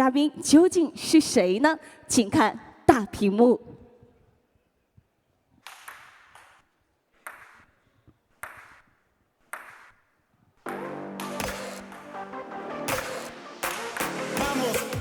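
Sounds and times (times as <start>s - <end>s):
music: 10.7s - 15.0s.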